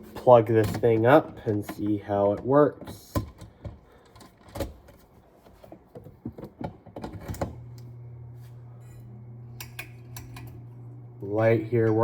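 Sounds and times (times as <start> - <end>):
handling clicks and knocks: 0.0 - 7.6
low electrical hum: 6.4 - 12.0.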